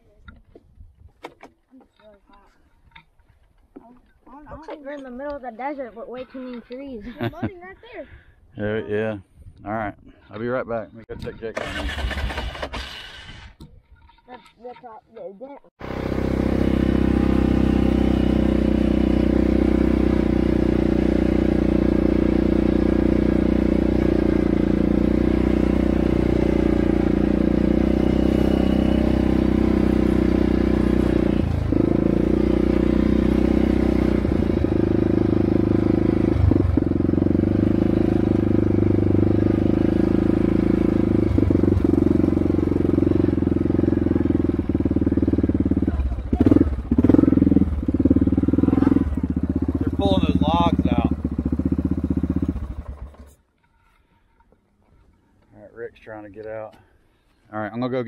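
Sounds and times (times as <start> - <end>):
atv engine running: 10.1 - 14.5, 15.8 - 55.4.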